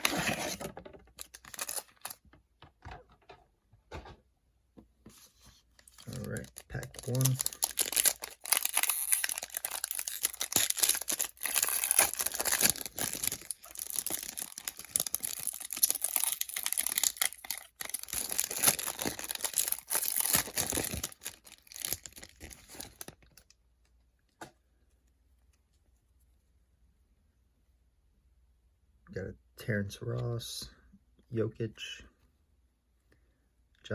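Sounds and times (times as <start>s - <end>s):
wrapper tearing and crinkling: 1.2s - 2.2s, 5.9s - 23.4s.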